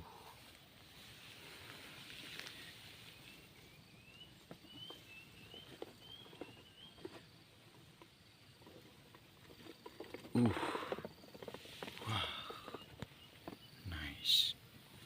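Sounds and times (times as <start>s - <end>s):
light clicks and rustles: 0.4s - 3.3s.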